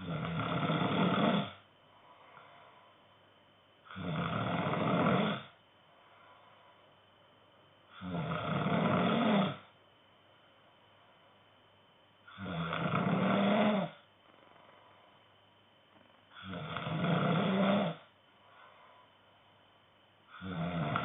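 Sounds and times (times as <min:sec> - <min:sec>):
man snoring: 0:00.0 - 0:01.6, 0:03.9 - 0:05.6, 0:07.9 - 0:09.7, 0:12.3 - 0:14.5, 0:16.3 - 0:18.1, 0:20.3 - 0:21.0
quiet breathing: 0:00.0 - 0:21.0.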